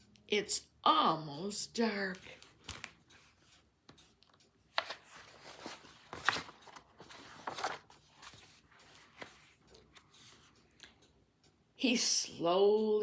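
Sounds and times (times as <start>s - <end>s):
paper rustling: 2.3s - 3.6s, 4.7s - 10.5s
soft taps of book: 2.4s - 10.5s.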